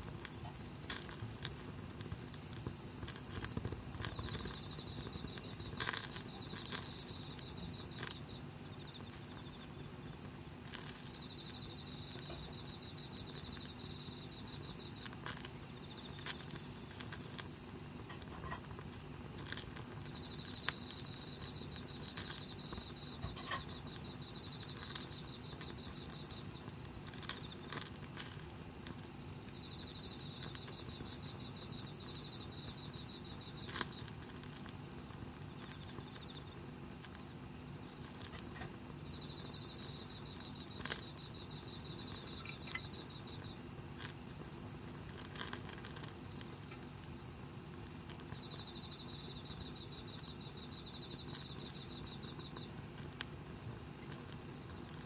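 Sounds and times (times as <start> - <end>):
campfire crackling and popping: 0.0 - 8.2
insects chirring: 0.0 - 55.0.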